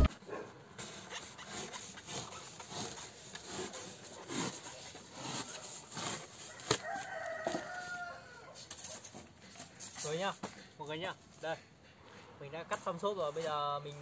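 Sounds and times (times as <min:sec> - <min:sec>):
blade rasping through foam: 0:00.8 - 0:07.2.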